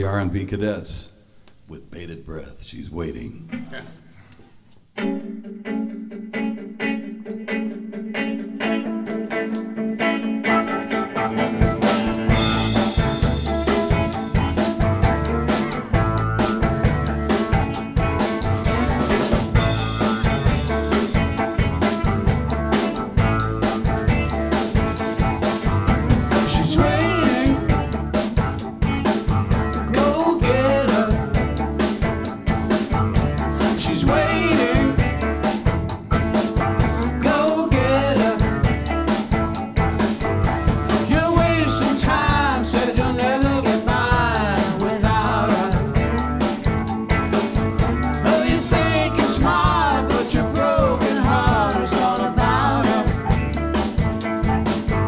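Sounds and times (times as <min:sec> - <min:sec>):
guitar figure: 0:03.4 - 0:55.0
band playing groove: 0:05.0 - 0:55.0
person singing: 0:26.3 - 0:28.4, 0:29.7 - 0:31.6, 0:33.5 - 0:35.6, 0:36.8 - 0:38.9, 0:40.9 - 0:46.3, 0:48.2 - 0:53.8.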